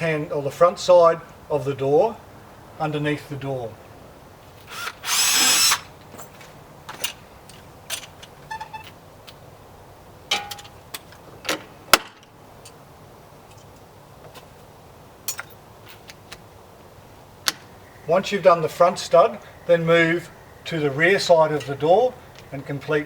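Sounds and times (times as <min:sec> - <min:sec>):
power drill drilling metal: 0:04.7 - 0:05.9.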